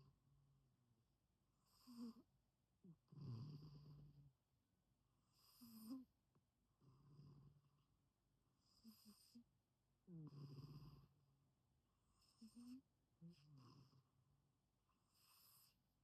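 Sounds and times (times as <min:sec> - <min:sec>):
pet snoring softly: 0:01.6 - 0:02.3, 0:02.9 - 0:04.3, 0:05.2 - 0:06.2, 0:06.8 - 0:07.7, 0:08.6 - 0:09.5, 0:10.1 - 0:11.2, 0:12.0 - 0:14.1, 0:15.0 - 0:15.9.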